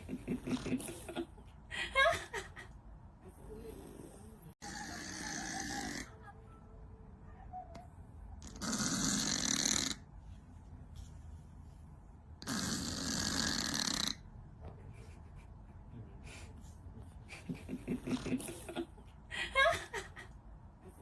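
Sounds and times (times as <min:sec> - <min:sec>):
cat snoring: 0:03.5 - 0:06.1, 0:08.4 - 0:10.0, 0:12.4 - 0:14.2.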